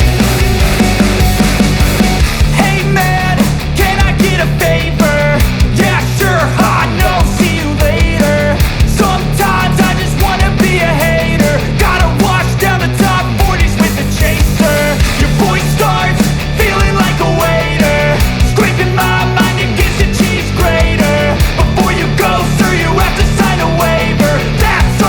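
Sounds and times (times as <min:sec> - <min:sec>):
upbeat rock music: 0:00.0 - 0:25.0.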